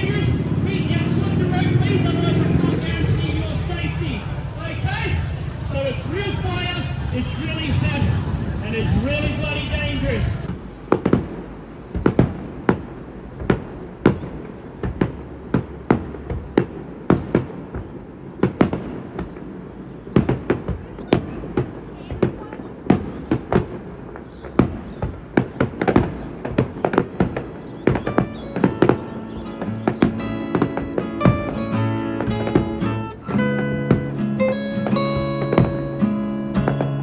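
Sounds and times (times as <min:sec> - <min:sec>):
steady low rumble: 0:00.0 - 0:18.4
sharp bangs or pops: 0:00.0 - 0:37.0.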